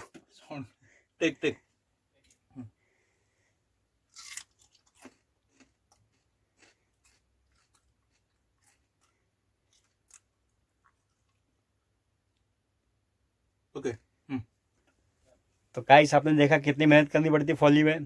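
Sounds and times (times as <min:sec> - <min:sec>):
raw potato crunching: 0:04.0 - 0:11.6.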